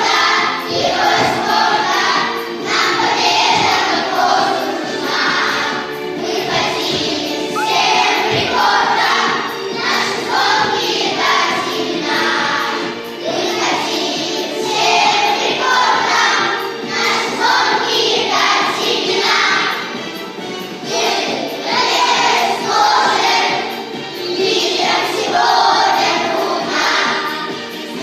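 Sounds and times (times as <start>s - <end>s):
backing music: 0.0s - 28.0s
children singing together: 0.0s - 28.0s.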